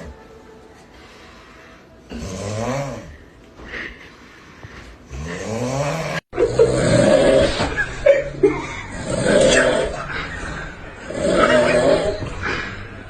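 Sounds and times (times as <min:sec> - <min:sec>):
person snoring: 0:02.1 - 0:03.2, 0:05.1 - 0:13.0.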